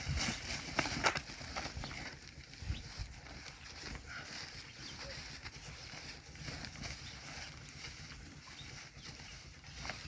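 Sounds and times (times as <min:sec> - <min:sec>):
cattle grazing: 0:00.0 - 0:10.0.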